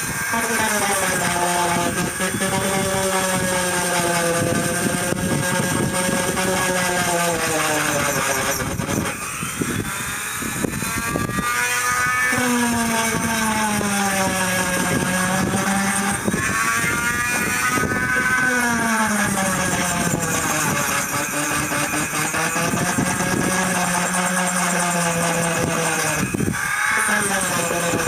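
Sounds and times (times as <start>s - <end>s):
rotary tool sanding hide: 0.0s - 28.0s.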